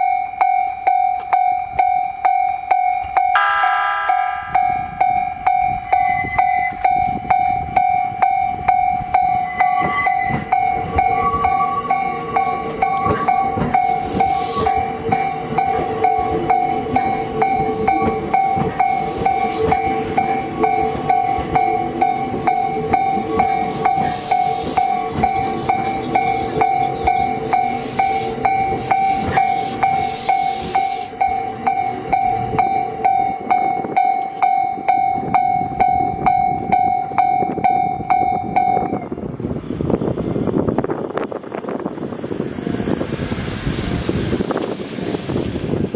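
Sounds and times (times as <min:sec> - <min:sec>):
level crossing alarm bell: 0:00.0 - 0:39.0
train wheels clicking over rail joints: 0:06.4 - 0:38.2.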